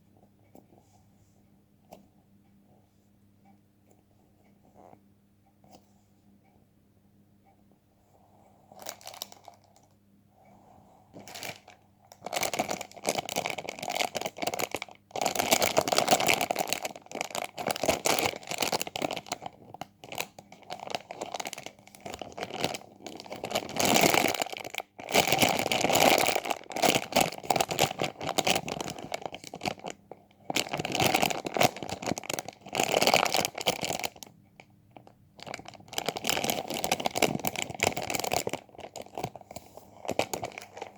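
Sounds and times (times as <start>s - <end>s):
crinkly material crumpling: 8.8s - 9.9s, 11.2s - 34.3s, 34.9s - 40.9s.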